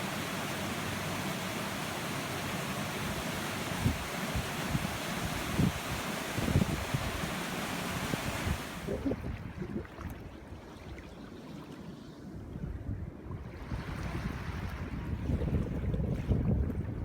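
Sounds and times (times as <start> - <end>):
surf washing on shore: 0.0 - 10.0
wind buffeting microphone: 3.8 - 10.6, 12.4 - 17.0.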